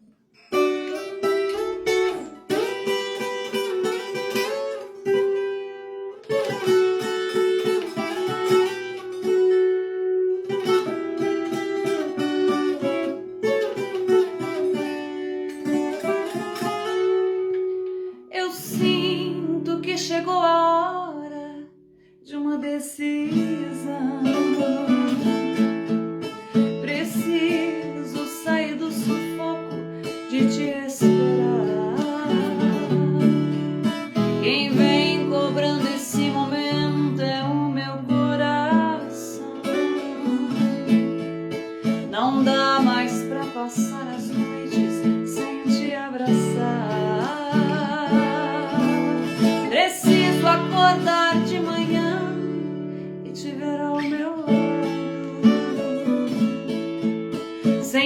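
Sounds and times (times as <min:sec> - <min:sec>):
plucked guitar runs and strums: 0:00.0 - 0:20.4, 0:23.2 - 0:58.0.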